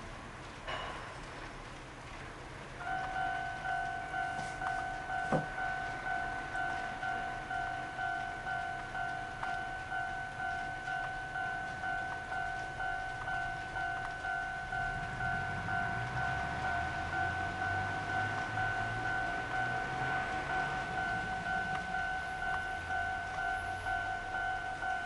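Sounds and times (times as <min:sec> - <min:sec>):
level crossing warning bell: 0:02.8 - 0:25.0.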